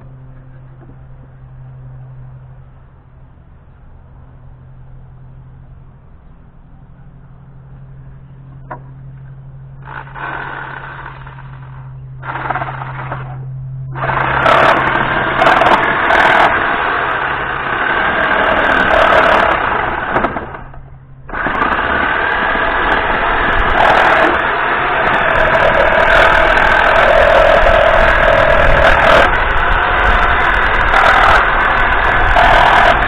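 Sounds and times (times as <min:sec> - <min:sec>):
power tool motor running: 0:09.7 - 0:33.0.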